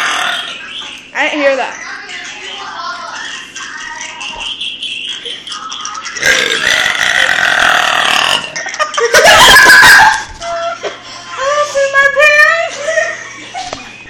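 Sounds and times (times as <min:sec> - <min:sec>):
person burping loudly: 0:00.0 - 0:00.6, 0:06.2 - 0:08.6.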